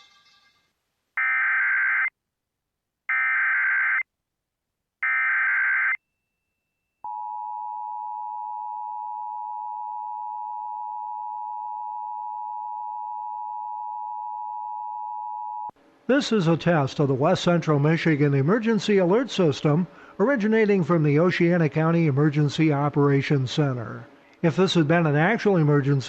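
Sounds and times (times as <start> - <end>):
steady attention tone: 5.0 - 15.7.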